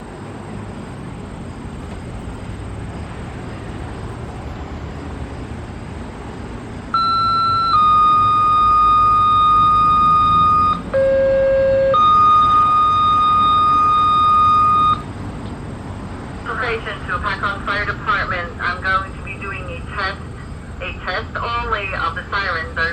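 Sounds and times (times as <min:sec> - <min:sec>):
steady background noise: 0:00.0 - 0:22.9
two-tone radio paging tones: 0:07.0 - 0:15.1.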